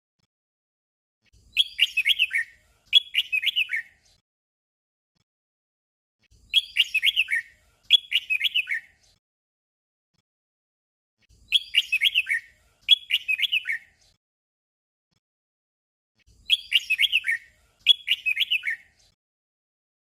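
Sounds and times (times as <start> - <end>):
bird singing whistled phrases: 1.4 - 4.0, 6.4 - 9.0, 11.4 - 14.0, 16.3 - 19.0.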